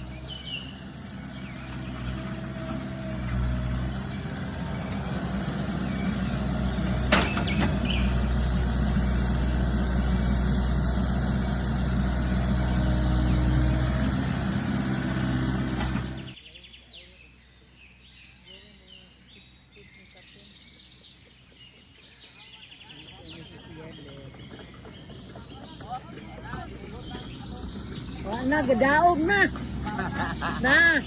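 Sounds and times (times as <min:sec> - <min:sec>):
vehicle engine running: 0:00.0 - 0:16.4, 0:20.4 - 0:31.0
birds chirping: 0:00.0 - 0:31.0.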